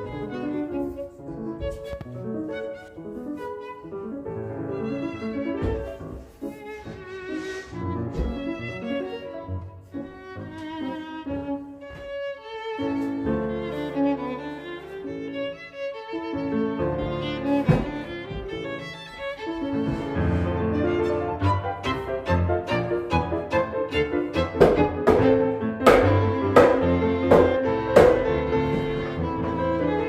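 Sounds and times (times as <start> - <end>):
violin and strings music: 0.0 - 30.0.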